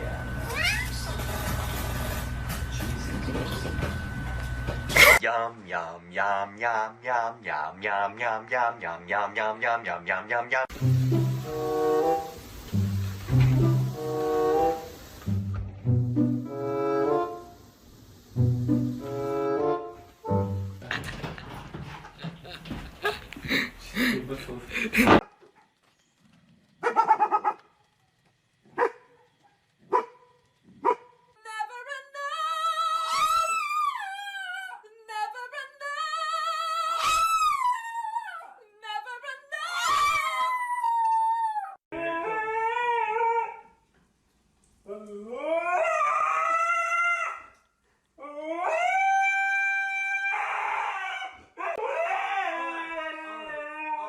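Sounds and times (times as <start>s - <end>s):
dog barking: 26.8s - 27.7s, 28.7s - 31.2s
dog howling: 39.6s - 43.8s, 44.9s - 47.6s, 48.2s - 54.0s.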